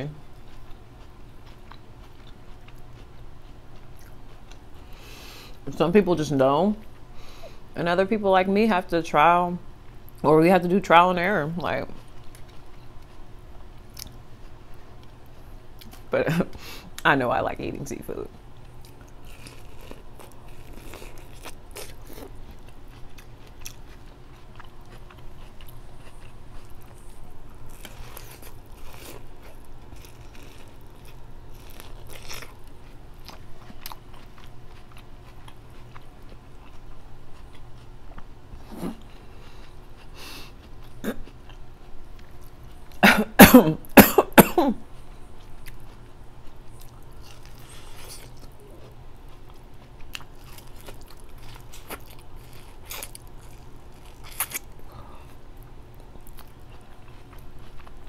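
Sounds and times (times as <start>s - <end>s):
biting and chewing with crunches: 0.2s - 5.0s, 18.6s - 43.0s, 44.9s - 58.0s
person coughing: 43.0s - 44.8s.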